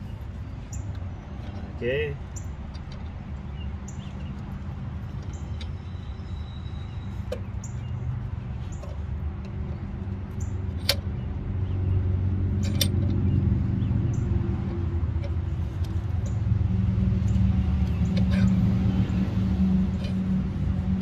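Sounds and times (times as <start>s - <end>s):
vehicle engine running: 0.0s - 21.0s
sharp metallic clicks: 12.4s - 21.0s.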